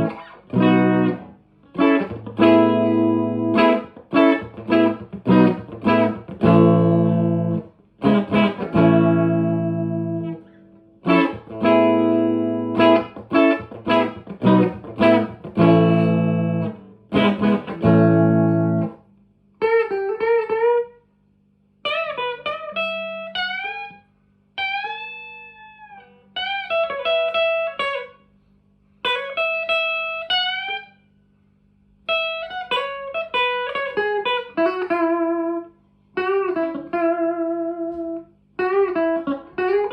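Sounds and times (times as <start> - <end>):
electric guitar chords ringing: 0.0 - 19.0, 24.6 - 28.2, 32.1 - 39.9
electric guitar lead phrases: 0.0 - 21.0, 21.9 - 24.0, 24.6 - 28.2, 32.1 - 39.9.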